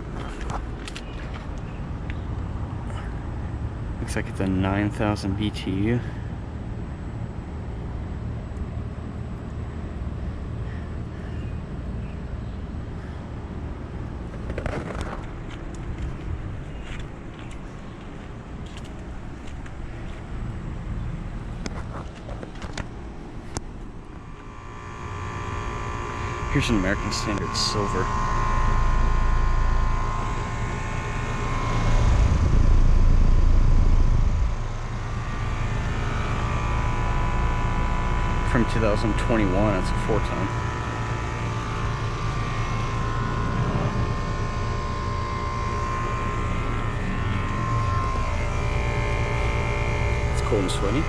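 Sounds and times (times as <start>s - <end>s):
rustle of handling or wind: 0.0s - 2.6s, 14.1s - 24.4s
air conditioner units humming: 0.0s - 51.0s.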